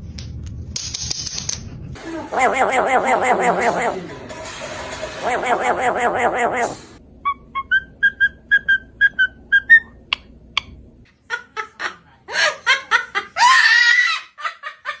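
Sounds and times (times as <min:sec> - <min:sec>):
parrot laugh-like calls: 0:02.1 - 0:04.1, 0:05.2 - 0:10.0
parrot whistling chirps: 0:05.4 - 0:10.8.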